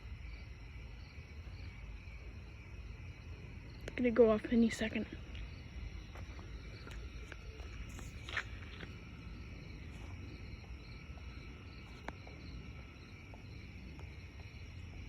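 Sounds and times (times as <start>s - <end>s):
faint high-pitched hum: 0.0s - 15.0s.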